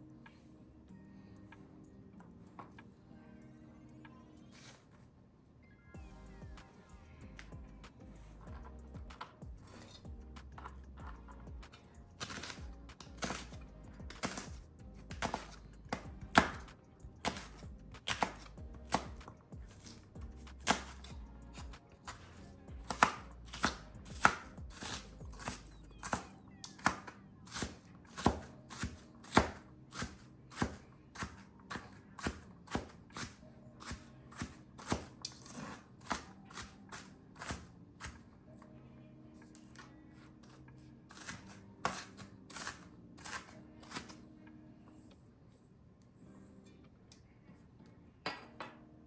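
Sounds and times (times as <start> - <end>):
knife slicing onion on board: 11.7 - 38.2, 41.1 - 44.2.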